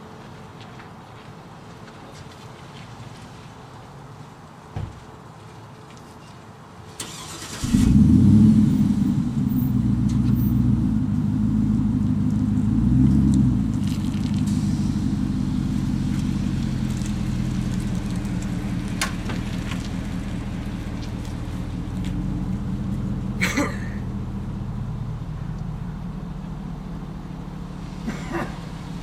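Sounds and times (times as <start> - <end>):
vehicle engine starting and idling: 6.9 - 29.0.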